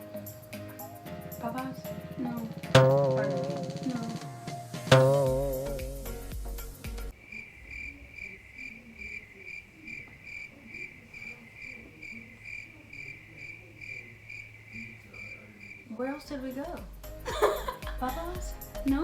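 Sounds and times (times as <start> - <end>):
music with drum hits: 0.4 - 7.1
cricket chirping: 7.1 - 17.0.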